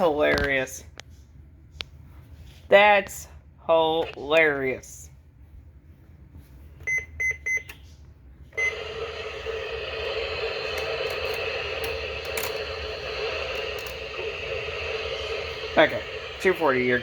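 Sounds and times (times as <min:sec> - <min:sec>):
radio static hiss: 0:08.9 - 0:17.0.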